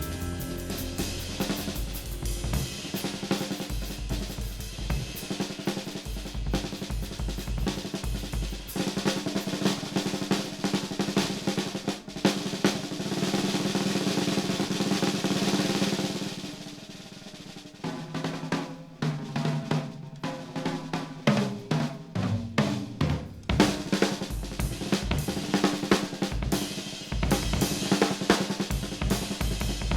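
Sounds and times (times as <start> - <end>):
cymbal wash: 0.0 - 17.8
snare drum rolls: 0.0 - 29.9.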